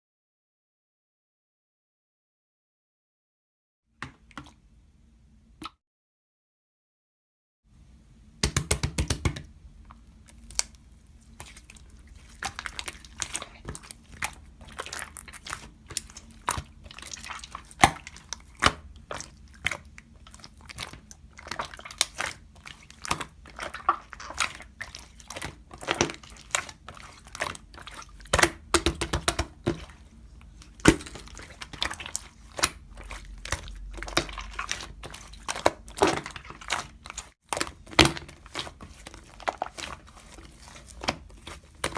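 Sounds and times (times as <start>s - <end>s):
hands squishing slime: 8.4s - 41.9s.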